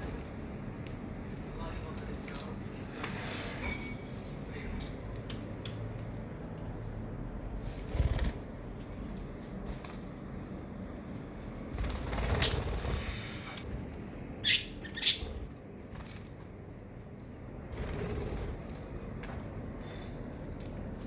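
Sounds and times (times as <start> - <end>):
birds flapping wings: 7.8 - 8.6, 11.6 - 14.1, 17.7 - 19.0.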